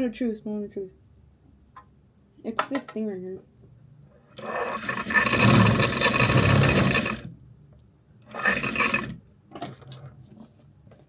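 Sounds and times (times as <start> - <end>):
sewing machine running fast: 4.4 - 7.3, 8.3 - 9.2.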